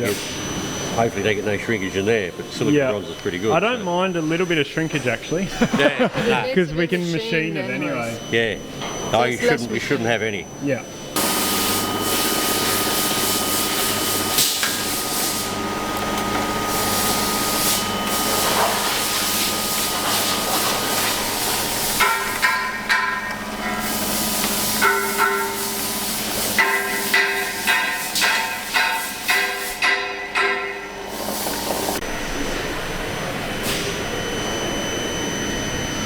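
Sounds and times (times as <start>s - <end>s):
workshop noise: 0.0s - 34.0s
ringing hammer blows: 24.8s - 25.8s, 26.6s - 31.1s.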